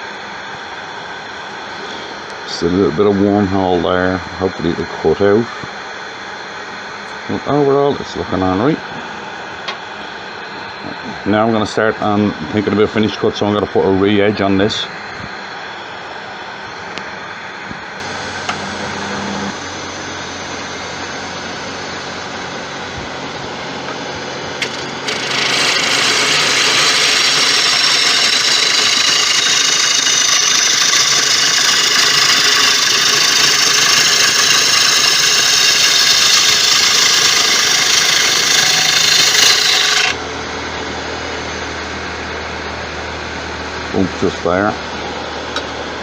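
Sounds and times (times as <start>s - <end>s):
bench grinder grinding hiss: 18.0s - 19.6s, 24.6s - 40.2s.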